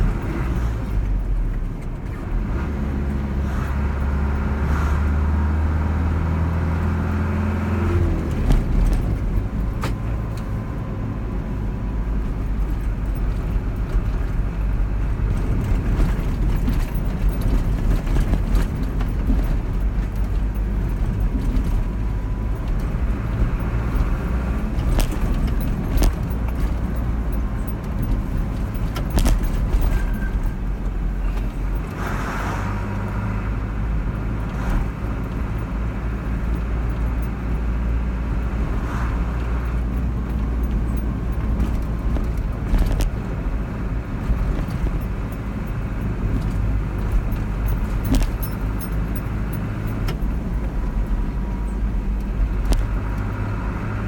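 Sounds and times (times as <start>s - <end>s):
car engine hum: 0.0s - 54.0s
light clicks and rattles: 8.0s - 32.0s, 34.1s - 53.5s
tyre rumble: 22.7s - 32.8s.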